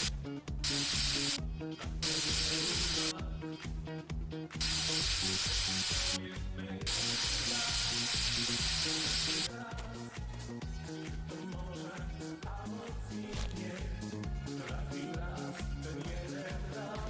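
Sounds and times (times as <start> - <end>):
spray hissing: 0.0 - 1.4, 2.0 - 3.1, 4.6 - 6.2, 6.9 - 9.5
music with a steady beat: 0.0 - 17.0.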